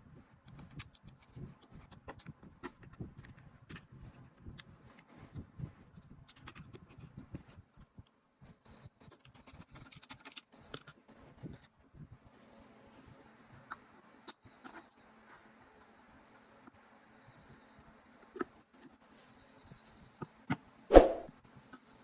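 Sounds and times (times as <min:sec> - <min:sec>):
small plastic clicks and scrapes: 0:00.5 - 0:05.4, 0:06.0 - 0:07.9, 0:09.0 - 0:11.0.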